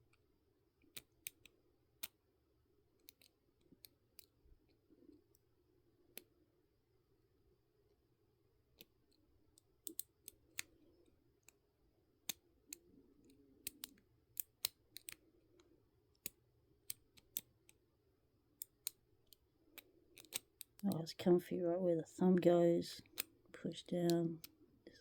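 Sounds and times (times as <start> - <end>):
lock pick clicking in lock: 3.0 - 4.3, 16.2 - 17.8, 18.6 - 20.9.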